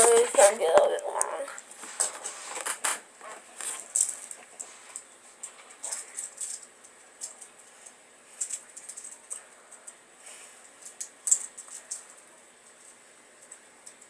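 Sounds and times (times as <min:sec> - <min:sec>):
toy handcuffs clinking: 0:10.8 - 0:12.1.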